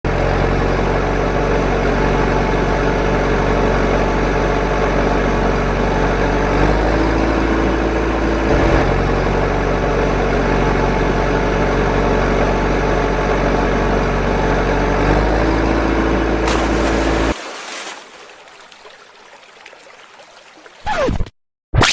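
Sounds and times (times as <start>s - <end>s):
engine idling: 0.1s - 17.4s.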